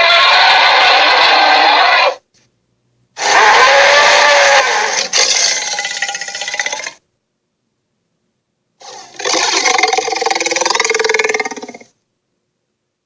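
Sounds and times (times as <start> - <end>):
dinosaur roars: 3.2 - 7.0, 8.8 - 11.9
rough rattling growl: 8.8 - 11.9.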